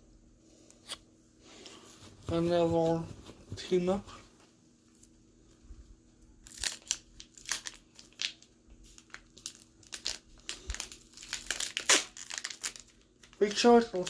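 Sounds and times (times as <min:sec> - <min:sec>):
foil wrapper crinkling and tearing: 0:06.4 - 0:14.0.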